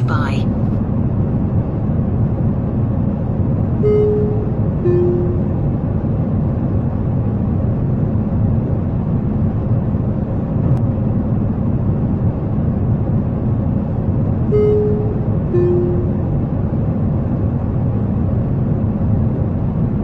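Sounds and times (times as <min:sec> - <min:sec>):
jet airliner rumble: 0:00.0 - 0:20.0
short pitched tone: 0:03.8 - 0:05.7, 0:14.5 - 0:16.4.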